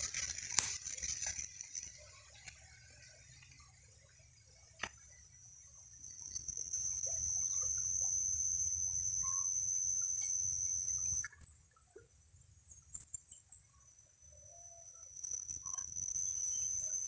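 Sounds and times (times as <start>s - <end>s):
insects trilling: 0.0s - 11.4s, 12.7s - 17.0s
bird chirps: 6.2s - 11.3s.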